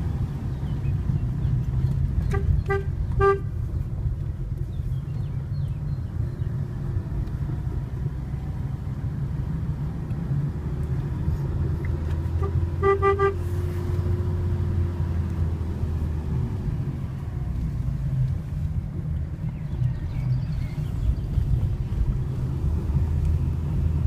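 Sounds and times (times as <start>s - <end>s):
car engine running: 0.0s - 24.0s
car horn toots: 2.2s - 3.6s, 12.3s - 13.5s.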